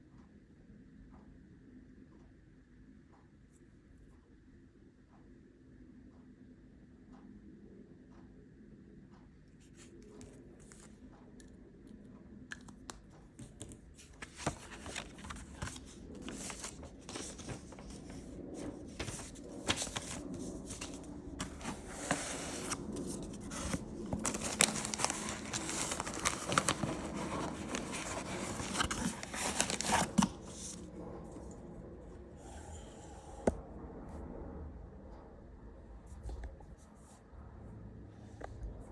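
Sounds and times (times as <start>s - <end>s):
packaging crinkling and tearing: 14.2s - 18.2s, 18.8s - 30.8s.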